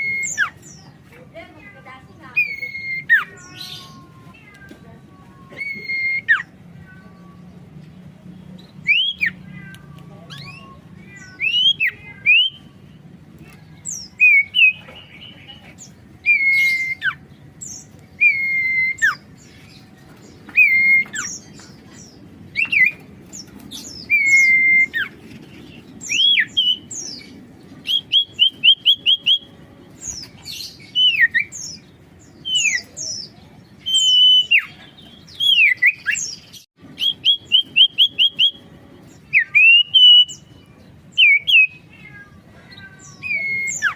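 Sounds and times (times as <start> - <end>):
bird whistling song: 0.0 - 0.8, 2.3 - 4.2, 5.5 - 6.6, 8.7 - 9.4, 10.3 - 12.7, 13.8 - 15.4, 16.2 - 19.5, 20.4 - 42.0, 43.0 - 43.9.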